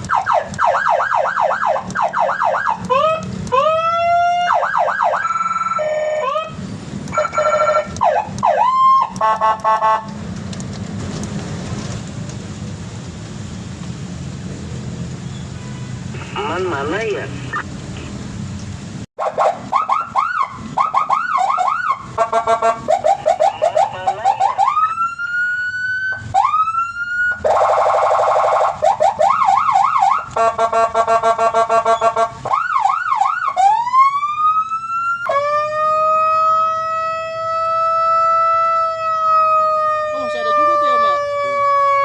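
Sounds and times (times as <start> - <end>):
electronic police siren: 0.0 - 10.0, 19.2 - 42.0.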